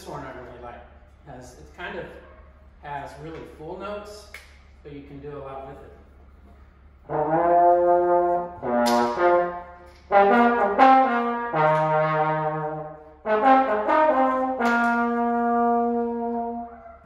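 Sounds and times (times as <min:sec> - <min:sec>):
valve trombone playing held notes: 0:07.0 - 0:17.0.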